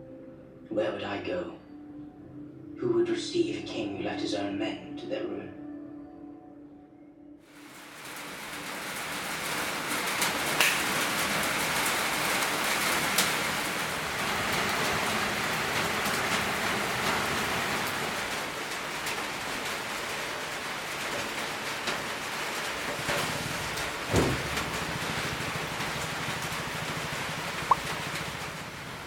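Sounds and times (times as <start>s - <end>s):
steady rain: 7.5s - 29.0s.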